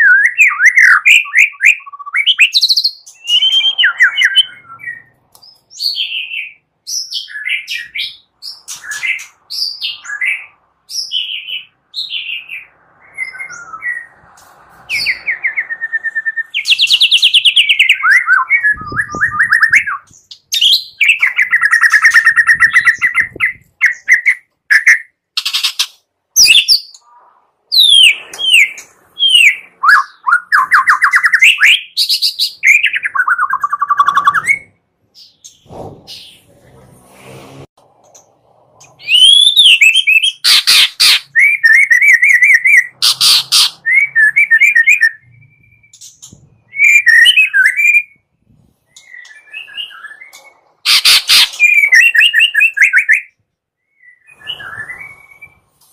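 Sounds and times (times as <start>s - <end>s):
bird singing whistled notes: 0.0s - 14.1s, 14.9s - 25.2s, 39.0s - 43.0s, 43.8s - 48.3s, 48.9s - 55.7s.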